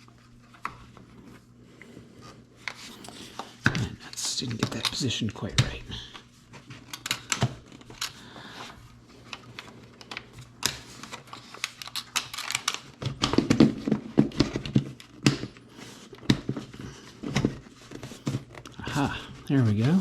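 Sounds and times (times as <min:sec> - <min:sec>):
clicks and knocks of plastic cover: 0:09.3 - 0:20.0.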